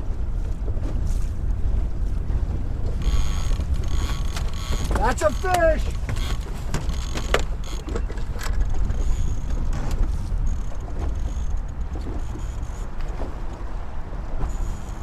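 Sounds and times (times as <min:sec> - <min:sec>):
boat engine rumble: 0:00.0 - 0:15.0
wind on microphone: 0:00.0 - 0:15.0
sharp knocks and clicks: 0:03.0 - 0:10.1.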